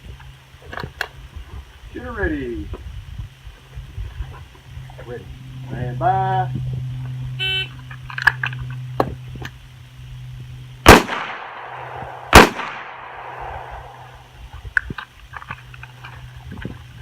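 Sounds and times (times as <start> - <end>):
handgun shots with echo: 10.9 - 14.0.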